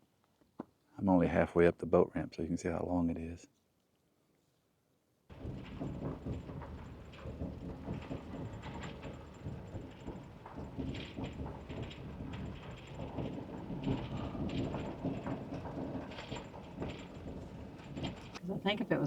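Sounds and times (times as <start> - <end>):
wind buffeting microphone: 5.3 - 19.0.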